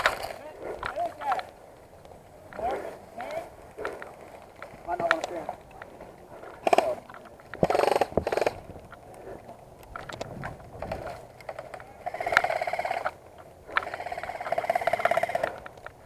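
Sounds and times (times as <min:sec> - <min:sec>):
airsoft guns firing bursts: 0:06.6 - 0:07.0, 0:07.6 - 0:08.6, 0:12.0 - 0:13.1, 0:13.8 - 0:15.6.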